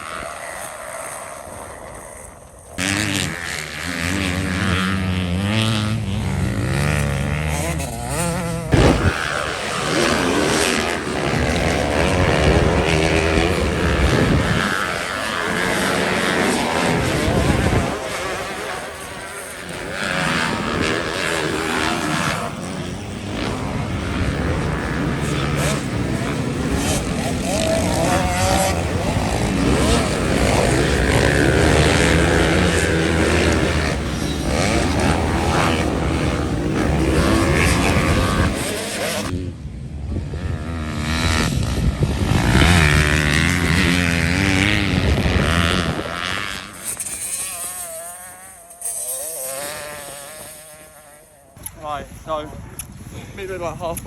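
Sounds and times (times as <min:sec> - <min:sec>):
dirt bike engines racing: 0:00.0 - 0:54.0.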